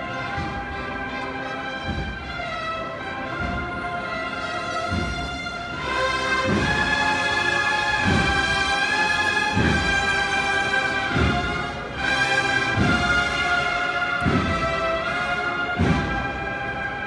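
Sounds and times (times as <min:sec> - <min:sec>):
deep drum beat: 0:00.0 - 0:16.8
brass band playing march: 0:00.0 - 0:17.0.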